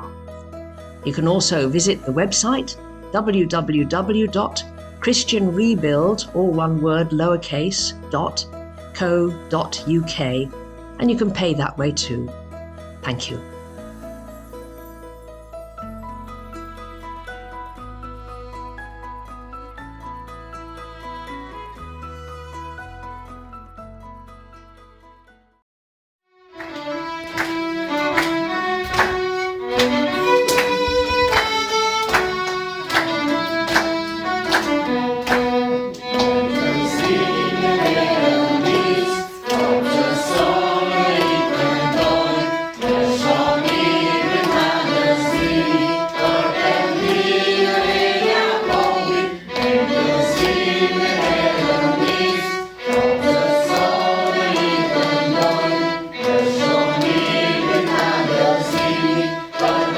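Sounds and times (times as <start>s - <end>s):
hymn on bowed strings: 26.5s - 59.9s
choir singing: 27.4s - 59.9s.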